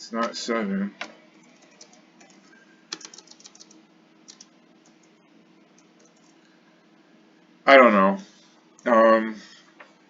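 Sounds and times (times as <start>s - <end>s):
computer keyboard typing: 1.4s - 5.2s, 5.8s - 6.5s.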